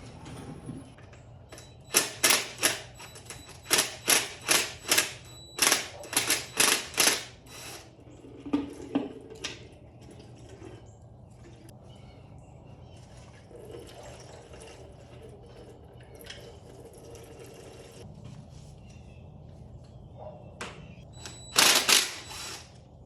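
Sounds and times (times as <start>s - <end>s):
sharp ringing clicks: 1.2s - 7.9s, 21.0s - 22.8s.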